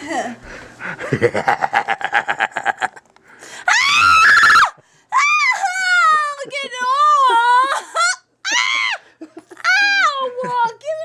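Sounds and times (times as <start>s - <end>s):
woman screaming: 3.7s - 6.4s, 7.0s - 9.0s, 9.6s - 10.3s.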